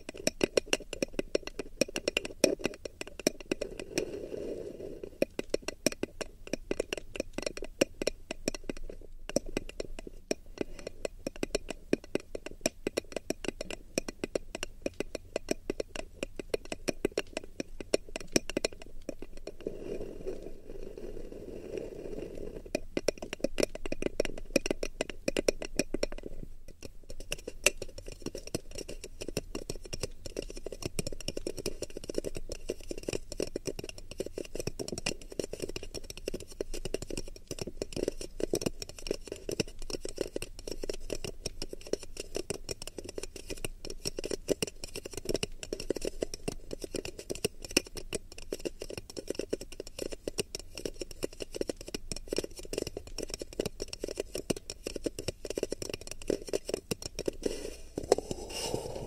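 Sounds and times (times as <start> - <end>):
clicking and tapping on microphone: 0.0 - 4.1, 5.2 - 19.7, 22.6 - 59.0
soft rubbing: 19.5 - 22.7, 57.3 - 59.0.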